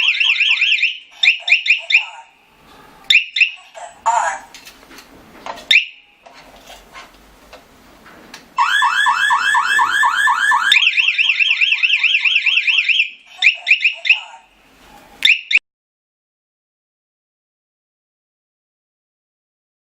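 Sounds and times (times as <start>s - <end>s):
electronic alarm siren: 0.0s - 2.1s, 8.6s - 14.3s.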